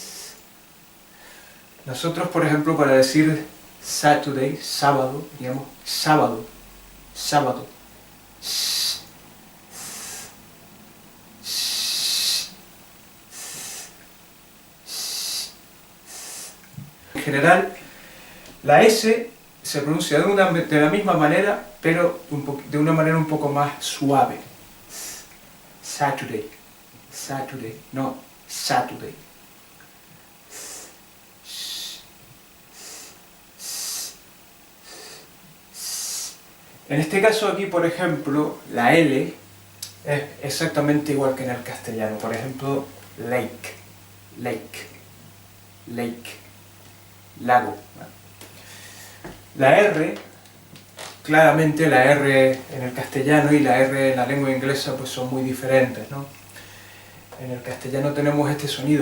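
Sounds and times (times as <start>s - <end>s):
man hissing s sounds: 0.0s - 0.4s, 8.4s - 9.1s, 9.7s - 10.4s, 11.4s - 12.6s, 13.3s - 14.0s, 14.8s - 16.6s, 24.9s - 26.1s, 28.5s - 28.8s, 30.5s - 32.1s, 32.7s - 34.2s, 34.8s - 36.4s.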